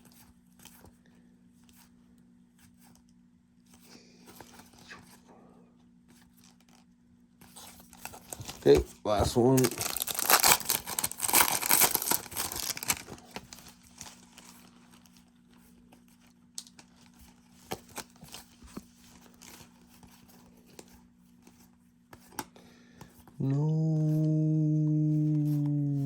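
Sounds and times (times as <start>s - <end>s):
foil wrapper crinkling and tearing: 7.5s - 15.6s, 16.5s - 19.9s.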